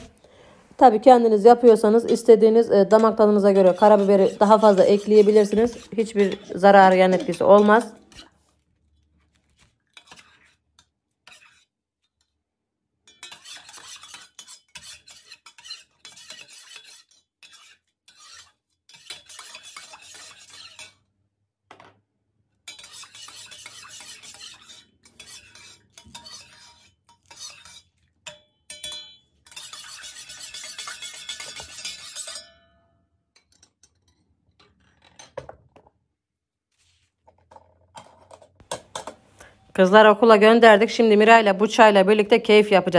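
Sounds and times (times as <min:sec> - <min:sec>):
spoon stirring in small pot: 0:01.0 - 0:21.1, 0:22.6 - 0:32.6
spoon clinking against pot: 0:01.6 - 0:08.3, 0:13.1 - 0:17.6, 0:22.7 - 0:32.8.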